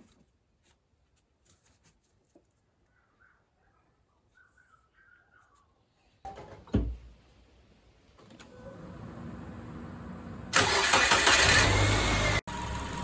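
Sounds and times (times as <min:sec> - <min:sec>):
car engine starting and idling: 0:08.2 - 0:13.0.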